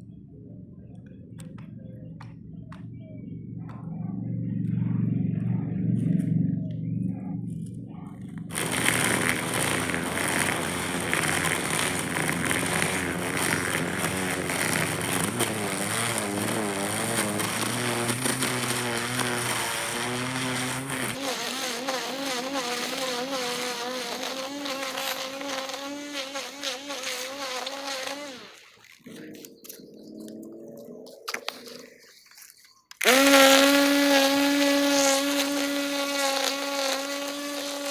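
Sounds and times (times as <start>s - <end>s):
low rumble: 0.0s - 10.0s
string trimmer motor buzzing: 7.6s - 30.3s, 31.2s - 37.9s.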